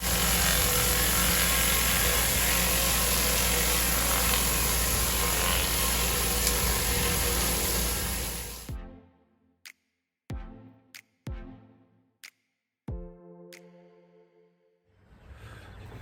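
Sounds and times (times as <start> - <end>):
high-pressure water spray hiss: 0.0 - 8.7
pressure washer engine hum: 0.0 - 8.7.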